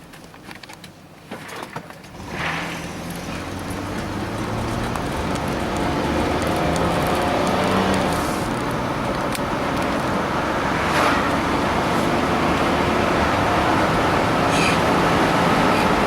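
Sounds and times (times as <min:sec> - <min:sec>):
engine running: 0:02.1 - 0:16.0.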